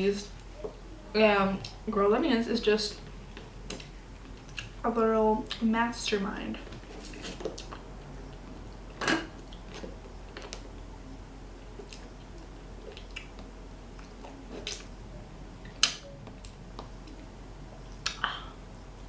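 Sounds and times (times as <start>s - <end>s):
person chewing food: 11.7s - 14.9s.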